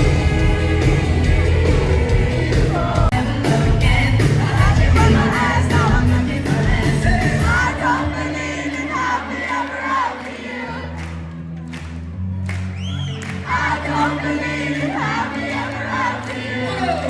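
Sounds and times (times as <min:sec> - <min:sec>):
live band playing pop-rock: 0:00.0 - 0:08.0
steady drumbeat: 0:00.0 - 0:08.2
lead singer singing: 0:00.0 - 0:10.8
crowd yelling: 0:07.4 - 0:11.1.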